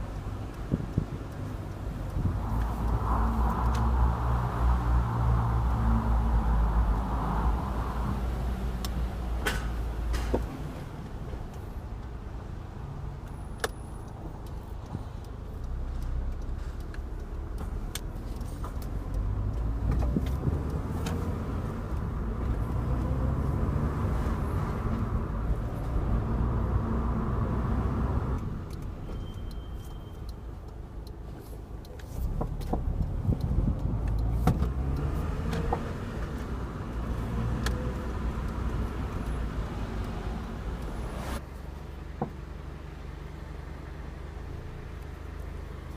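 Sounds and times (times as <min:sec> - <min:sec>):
car engine humming: 0:00.0 - 0:45.9
suspension clunks: 0:13.2 - 0:27.6, 0:28.2 - 0:41.4.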